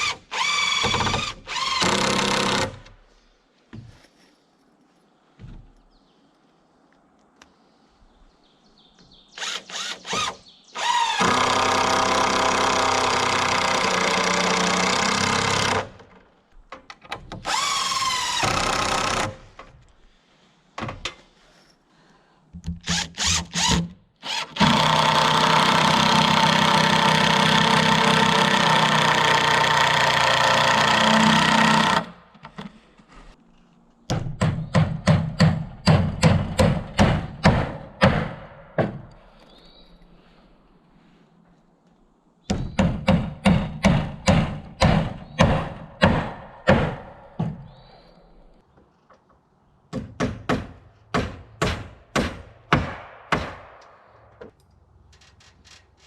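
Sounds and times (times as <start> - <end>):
power drill running: 23.1 - 32.1.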